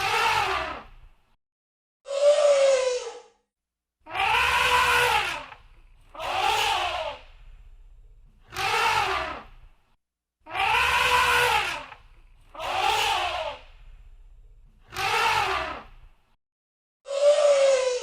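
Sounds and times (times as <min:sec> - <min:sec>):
elephant trumpeting: 0:04.1 - 0:07.2, 0:10.5 - 0:13.6.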